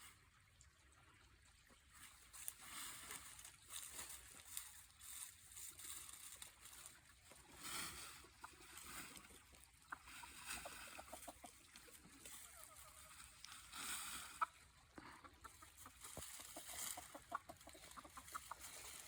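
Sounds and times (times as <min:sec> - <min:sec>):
chickens clucking: 0:05.2 - 0:19.0.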